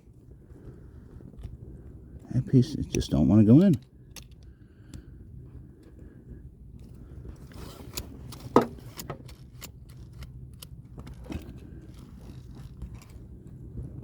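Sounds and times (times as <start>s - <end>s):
seat belt clicks and scrapes: 6.8s - 14.0s.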